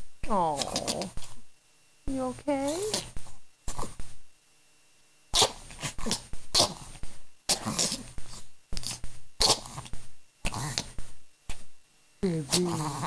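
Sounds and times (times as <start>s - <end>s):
pet sneezing: 5.3s - 8.2s, 9.4s - 9.8s.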